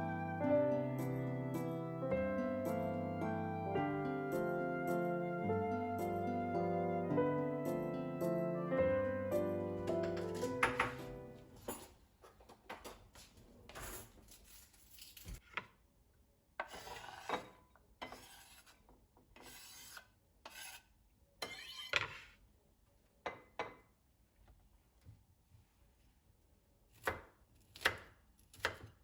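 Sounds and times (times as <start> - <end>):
food scraping and rubbing strokes: 16.6 - 18.8, 19.4 - 22.4.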